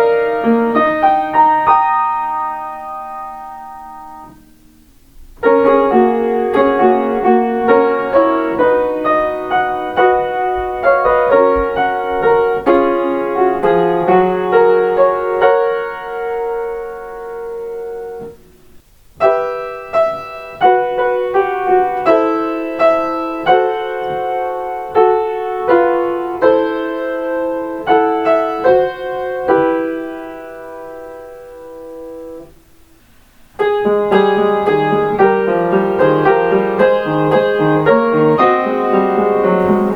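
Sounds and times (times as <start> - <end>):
solo piano chime melodies: 0.0 - 4.6, 19.2 - 32.5, 33.6 - 39.9.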